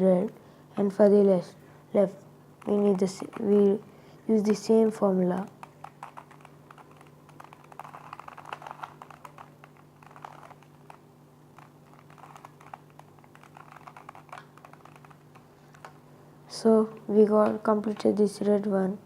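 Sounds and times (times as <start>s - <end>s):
puzzle cube plastic layers clicking: 2.6s - 3.8s, 4.4s - 16.0s.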